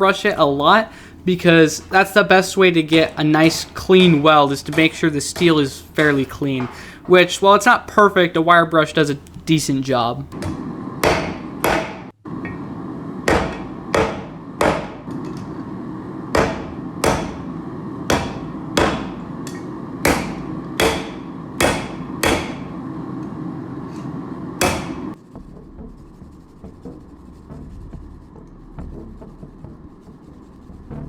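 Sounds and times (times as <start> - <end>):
steady low rush: 0.0 - 11.6, 15.6 - 31.0
hammer striking steel on anvil: 11.0 - 12.6, 13.3 - 15.1, 16.3 - 17.5, 18.1 - 22.7, 24.6 - 25.1.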